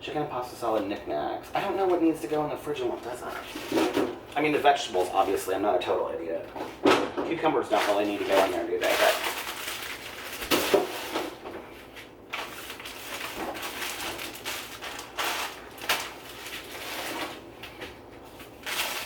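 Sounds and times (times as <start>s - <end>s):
packages rustling: 3.0s - 19.0s
packages knocking: 6.5s - 11.7s, 12.3s - 18.0s
fridge drawer sliding: 6.6s - 9.3s.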